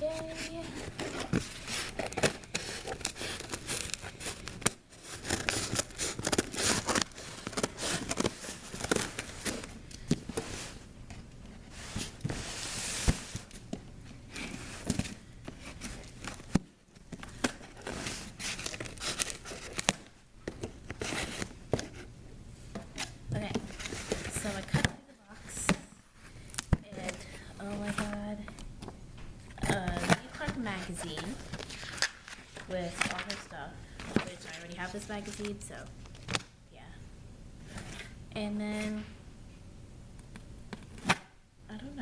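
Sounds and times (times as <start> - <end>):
packaging crinkling: 0.2 - 10.7, 14.3 - 21.6, 29.6 - 36.5
cardboard being cut and torn: 0.3 - 9.3.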